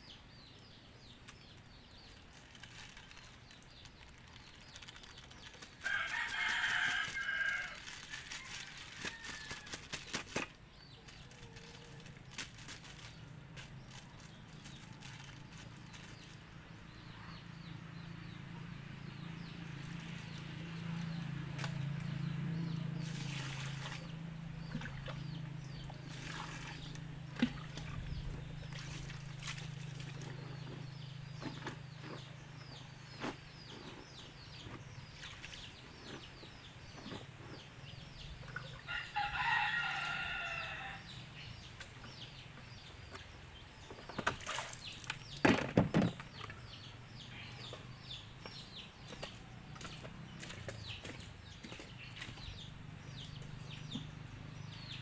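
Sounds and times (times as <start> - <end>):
rooster crowing: 5.8 - 7.8, 38.9 - 41.1.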